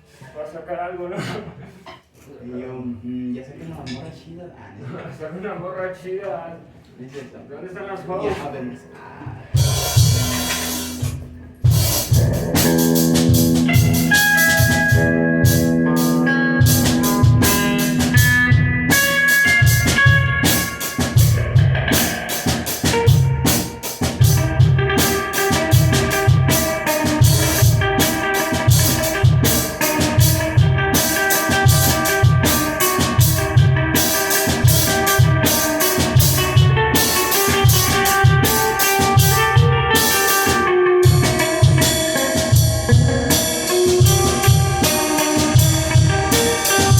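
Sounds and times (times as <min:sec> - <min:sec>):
drum kit beat: 0:09.3 - 0:46.9
electric guitar chords: 0:09.6 - 0:46.9.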